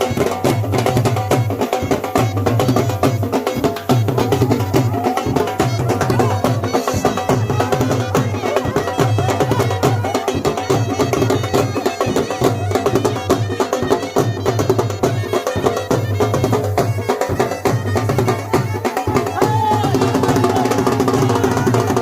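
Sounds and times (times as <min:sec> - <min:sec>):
dhol drumming: 0:00.0 - 0:22.0
folk band melody: 0:00.0 - 0:22.0.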